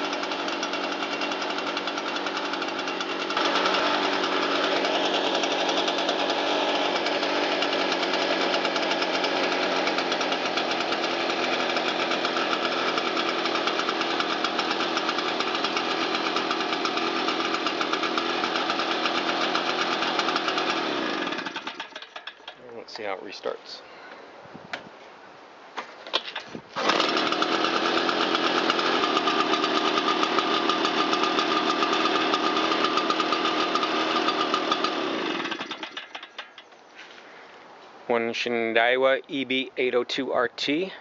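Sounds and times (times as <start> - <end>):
two-stroke blower engine running: 0.0 - 22.6, 26.8 - 36.6.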